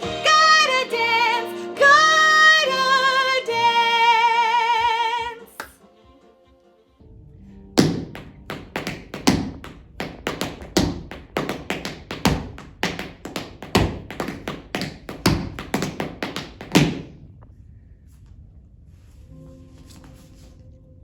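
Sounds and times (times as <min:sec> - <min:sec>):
tap shoes tapping on hard floor: 0:07.8 - 0:17.1.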